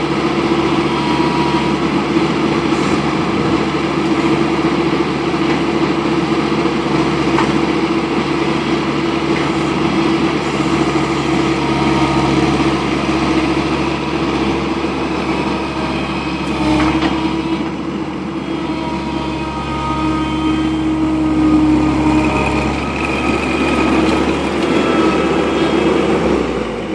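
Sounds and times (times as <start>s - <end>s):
skid steer engine running: 0.0s - 26.9s
high whining tones: 18.4s - 26.8s.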